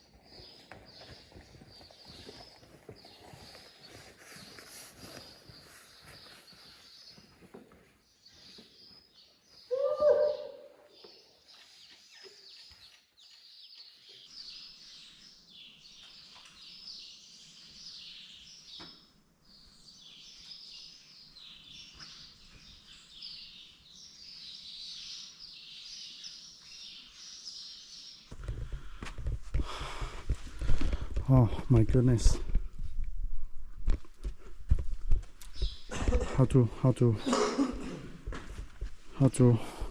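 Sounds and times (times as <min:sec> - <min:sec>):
small birds chirping: 0:00.0 - 0:33.0, 0:33.8 - 0:37.3, 0:38.6 - 0:39.9
loud bird call: 0:09.7 - 0:10.9.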